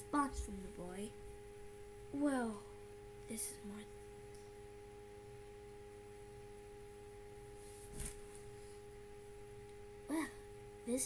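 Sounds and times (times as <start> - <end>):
faint electrical whine: 0.0 - 11.0.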